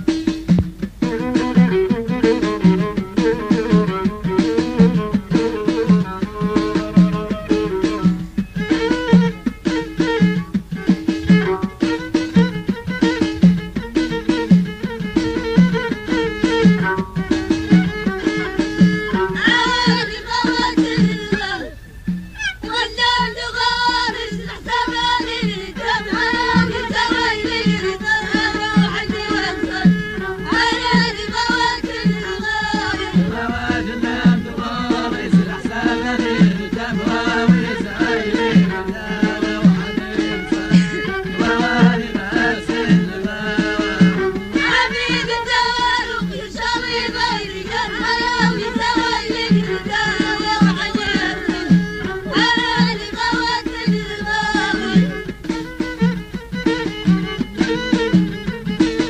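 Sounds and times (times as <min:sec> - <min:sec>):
folk song melody: 0:00.0 - 0:59.0
hand drum beat: 0:00.0 - 0:59.0
person singing: 0:24.4 - 0:46.8, 0:48.2 - 0:55.3.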